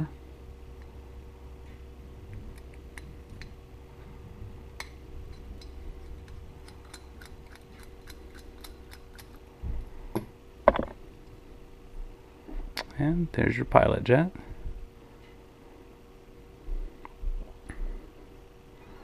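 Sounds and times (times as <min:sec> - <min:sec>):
louder knocks: 0:10.7 - 0:11.0.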